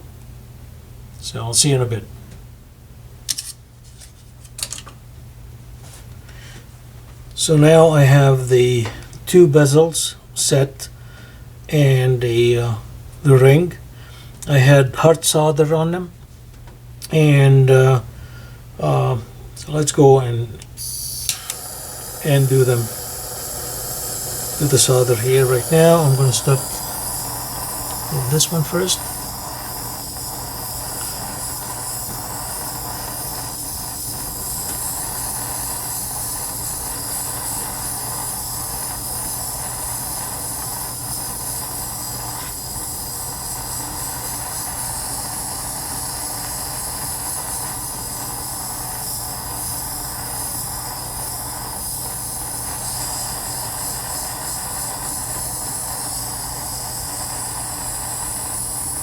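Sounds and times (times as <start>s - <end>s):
torch flame hissing: 18.7s - 59.0s.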